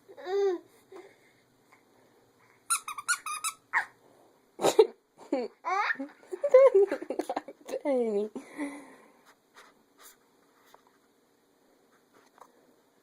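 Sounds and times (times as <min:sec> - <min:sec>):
baby squealing laughter: 0:02.8 - 0:04.0.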